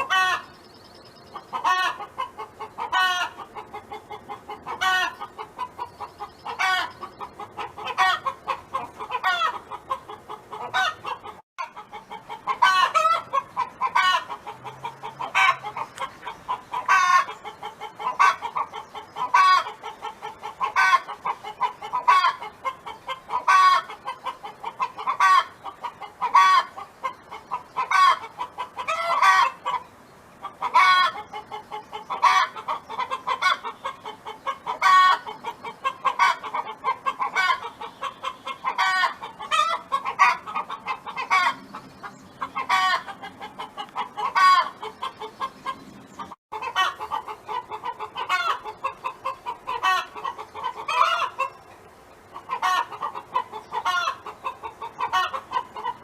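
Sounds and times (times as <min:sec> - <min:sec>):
hen clucking: 0:00.0 - 0:56.0.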